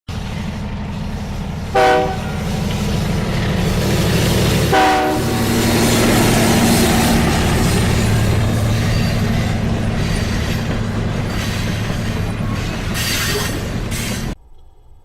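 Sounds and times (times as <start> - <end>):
low engine rumble: 0.1 - 15.0
locomotive horn blasts: 1.7 - 2.6, 4.7 - 5.8.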